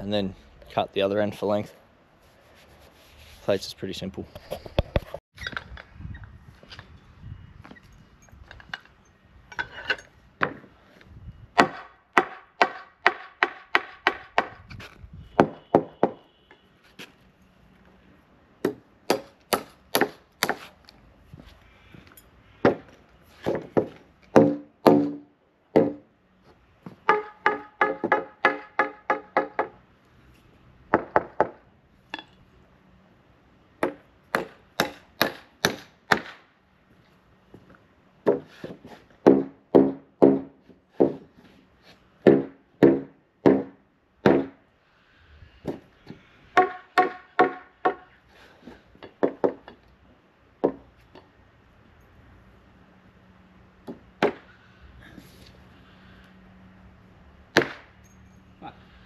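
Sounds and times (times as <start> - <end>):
hammer driving nails into timber: 18.6 - 20.6, 22.6 - 26.1, 27.1 - 29.8, 33.8 - 36.4, 38.2 - 41.3, 42.2 - 44.6, 46.6 - 48.1.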